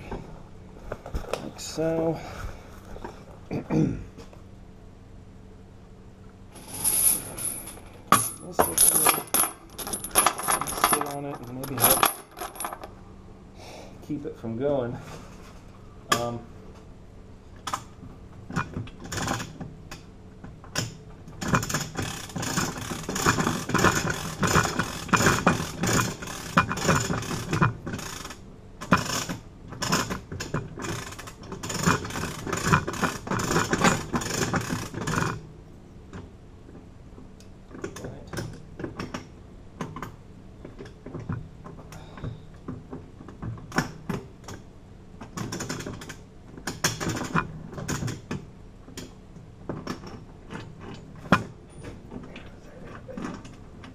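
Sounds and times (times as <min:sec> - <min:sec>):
metallic clicking and rattling: 0:06.6 - 0:12.9.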